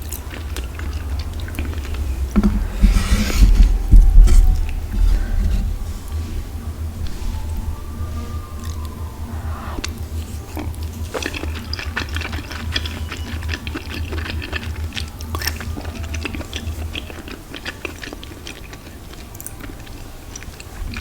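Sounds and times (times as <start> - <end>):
steady low hum: 0.0 - 21.0
person chewing with wet smacks: 10.6 - 21.0.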